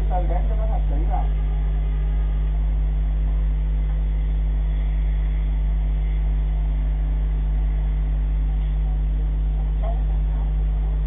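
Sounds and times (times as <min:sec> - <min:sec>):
low mechanical drone: 0:00.0 - 0:11.0.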